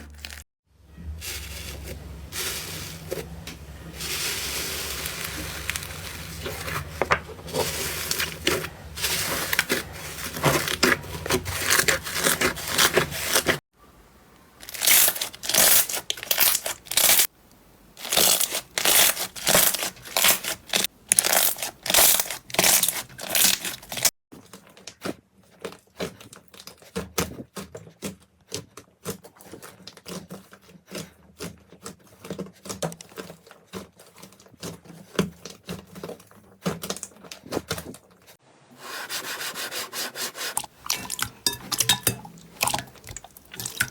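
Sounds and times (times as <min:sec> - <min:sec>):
slime squishing and crackling: 0:01.2 - 0:13.6, 0:14.6 - 0:17.3, 0:18.0 - 0:38.4, 0:40.7 - 0:43.9.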